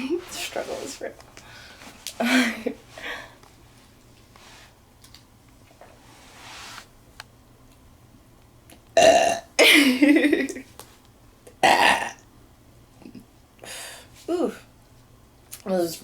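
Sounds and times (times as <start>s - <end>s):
woman burping: 9.0s - 10.0s, 11.6s - 12.2s.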